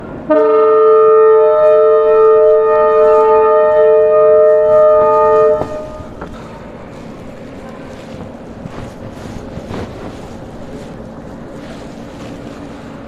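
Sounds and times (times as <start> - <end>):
train running noise: 0.0 - 13.0
locomotive air horn blast: 0.3 - 6.4.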